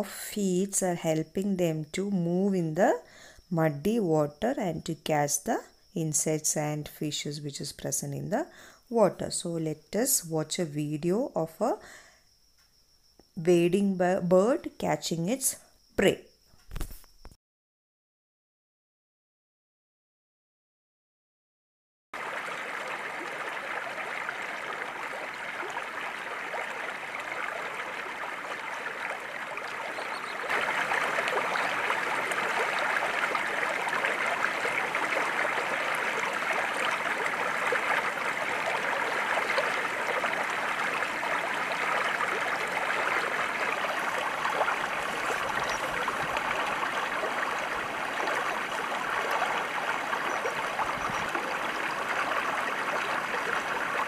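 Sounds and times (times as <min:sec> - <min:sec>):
running water rushing: 0:22.2 - 0:54.0.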